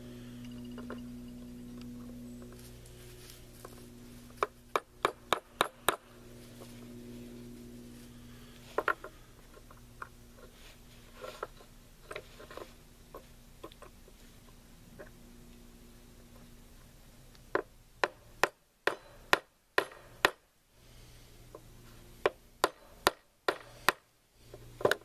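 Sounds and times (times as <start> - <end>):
steady low hum: 0.0 - 25.0
sharp knocks on metal: 4.7 - 6.1, 17.5 - 20.4, 22.2 - 24.0.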